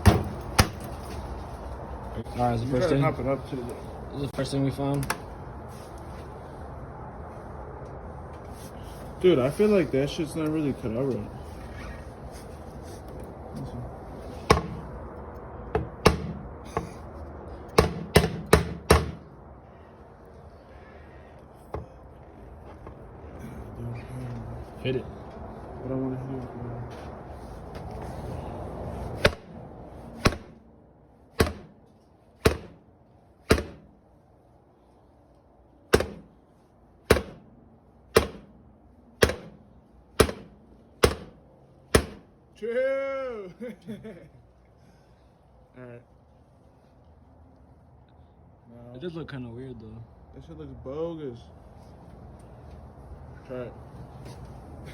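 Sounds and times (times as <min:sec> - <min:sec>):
hammer striking metal: 0:14.5 - 0:14.9, 0:15.8 - 0:16.9, 0:17.7 - 0:19.2, 0:31.4 - 0:31.8, 0:32.4 - 0:32.8, 0:33.5 - 0:33.9, 0:36.0 - 0:36.3, 0:37.1 - 0:37.5, 0:38.1 - 0:38.6, 0:39.2 - 0:39.6, 0:40.2 - 0:41.4, 0:42.0 - 0:42.3.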